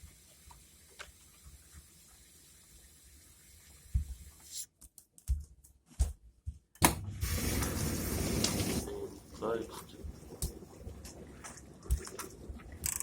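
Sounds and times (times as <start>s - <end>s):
water rushing through valve: 7.0s - 13.0s.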